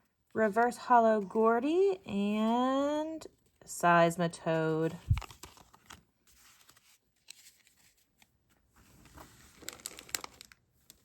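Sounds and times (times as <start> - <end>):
foil wrappers crinkling: 9.0 - 11.0.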